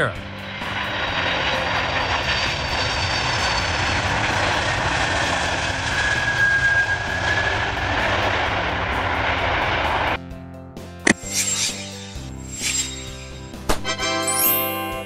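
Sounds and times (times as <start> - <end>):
high whine: 0.0 - 10.2, 11.1 - 14.7
jet engines running: 0.0 - 10.2.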